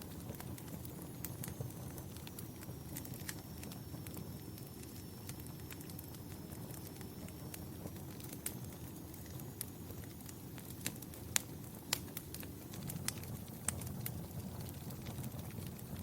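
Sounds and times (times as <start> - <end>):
fireplace fire crackling: 0.0 - 16.0.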